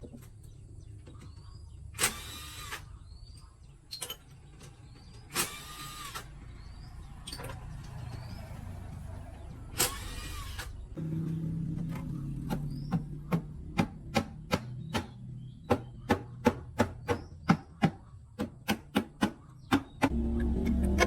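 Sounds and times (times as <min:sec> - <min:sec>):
hammer tapping: 0:13.3 - 0:21.0
low hum: 0:20.1 - 0:21.0.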